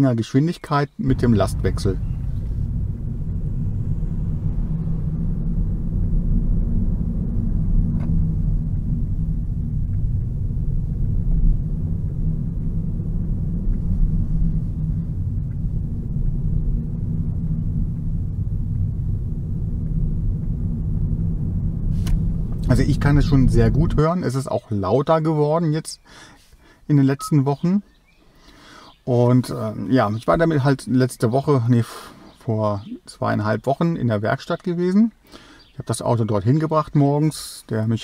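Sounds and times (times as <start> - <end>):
car cabin low rumble: 0.2 - 26.0.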